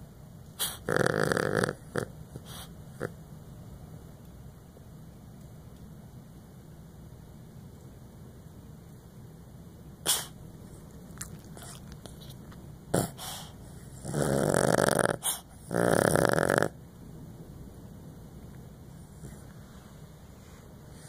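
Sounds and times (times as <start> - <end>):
dog snoring: 0.6 - 3.2, 11.1 - 12.0, 12.9 - 16.8
dog short sharp breaths: 2.4 - 2.8, 10.1 - 10.4, 13.1 - 13.6.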